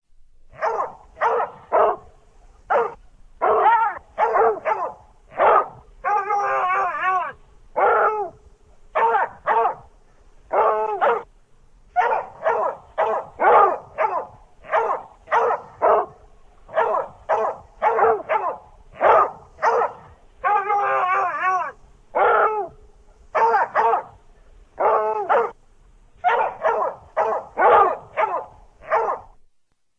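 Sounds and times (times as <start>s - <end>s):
cartoon hound barking: 0.6s - 2.0s, 2.7s - 8.3s, 9.0s - 9.8s, 10.5s - 11.3s, 12.0s - 22.8s, 23.4s - 24.1s, 24.8s - 25.6s, 26.2s - 29.3s
hound baying call: 12.0s - 22.7s, 26.2s - 29.2s.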